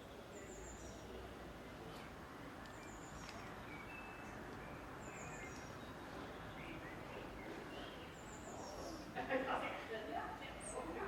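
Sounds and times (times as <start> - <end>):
bird chirps: 2.7 - 9.2.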